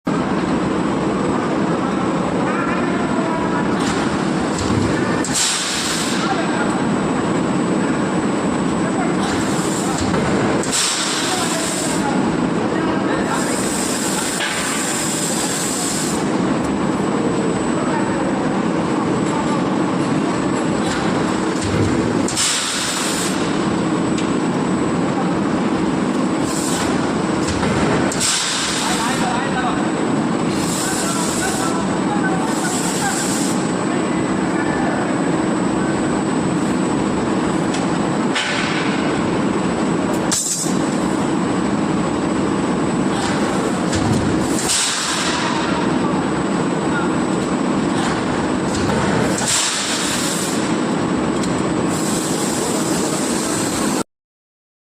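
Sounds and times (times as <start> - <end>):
hissing air burst: 51.9 - 53.5.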